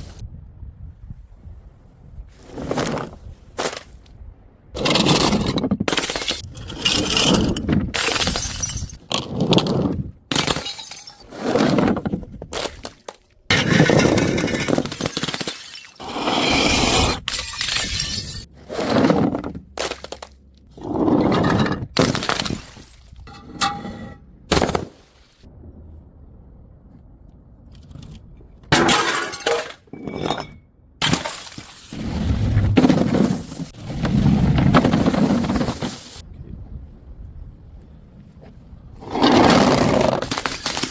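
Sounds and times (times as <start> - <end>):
glass bottles smashing: 8.0 - 9.0, 10.3 - 11.3, 13.5 - 16.0, 17.2 - 18.5, 28.8 - 31.9.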